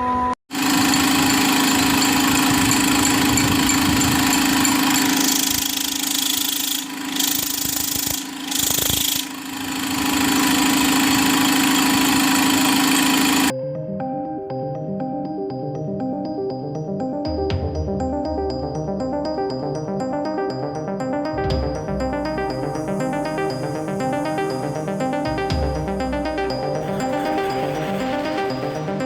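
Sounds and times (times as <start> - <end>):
large machine humming and hissing: 0.6 - 13.5.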